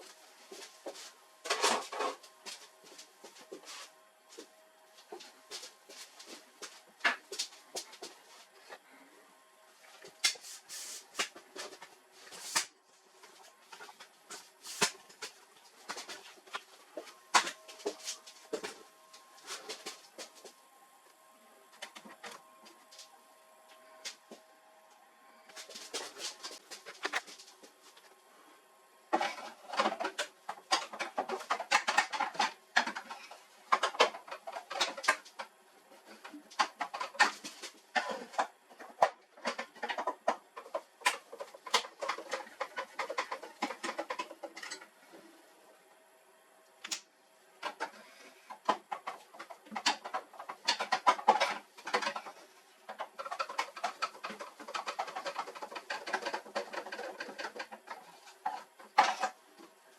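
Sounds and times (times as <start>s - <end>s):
sharp clicks and rattles: 36.2s - 44.9s, 47.6s - 59.4s.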